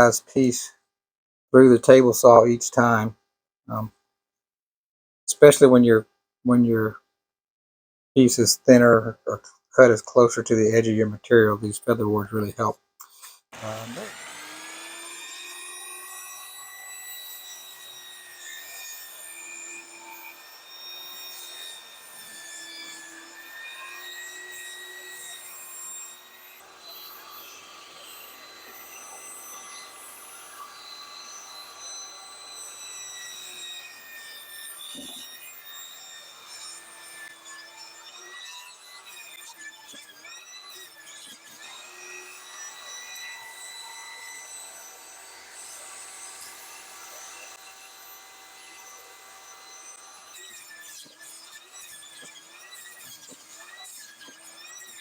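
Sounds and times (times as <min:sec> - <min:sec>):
table saw ripping wood: 0:13.6 - 0:55.0.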